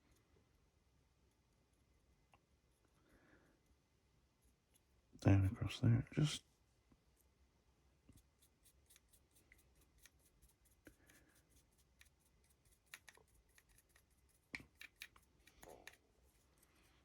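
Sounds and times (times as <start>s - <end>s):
dry brush scratching: 8.2s - 17.0s.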